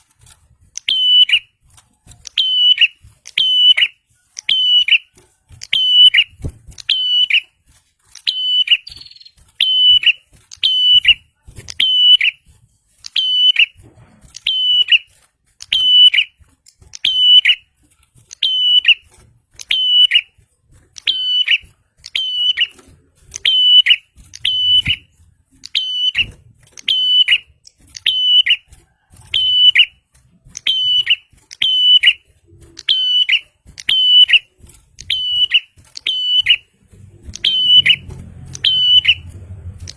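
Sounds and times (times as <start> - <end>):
bird chirping sharply: 8.2 - 12.4, 13.1 - 13.8, 14.4 - 15.1, 21.0 - 22.8, 23.4 - 28.7, 30.6 - 32.2, 32.8 - 36.7, 37.3 - 39.3.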